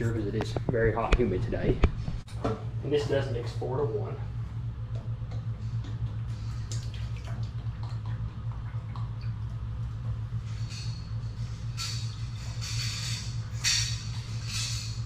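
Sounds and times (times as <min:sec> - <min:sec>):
low hum: 0:00.0 - 0:15.0
liquid dripping and trickling: 0:04.9 - 0:11.0.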